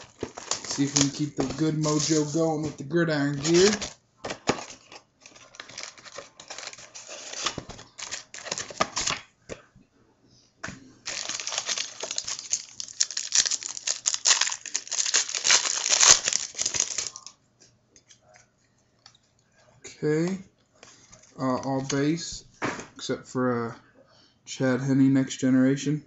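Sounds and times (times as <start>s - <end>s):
wrapping being torn and crinkled: 0.0s - 9.2s, 11.0s - 17.3s.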